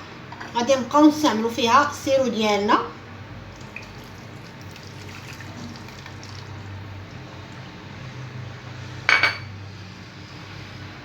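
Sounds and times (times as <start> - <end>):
liquid trickling: 3.5 - 7.7
kitchenware clinking: 9.1 - 9.6.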